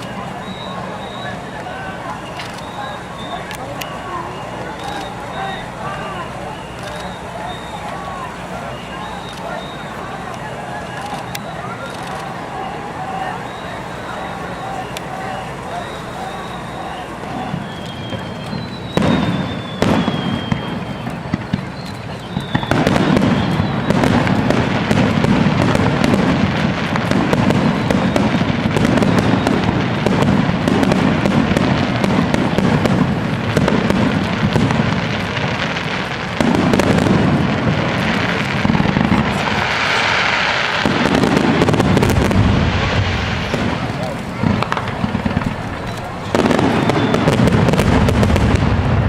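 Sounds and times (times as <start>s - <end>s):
fireworks booming: 0.0s - 49.0s
fireworks crackling: 0.0s - 49.0s.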